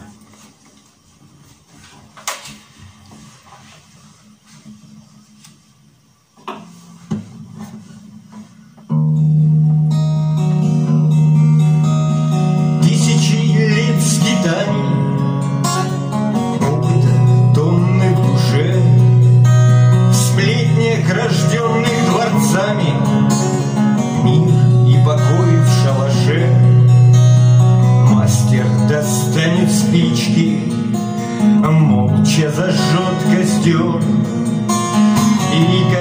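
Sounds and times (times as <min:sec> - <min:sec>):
acoustic guitar playing: 0:06.4 - 0:36.0.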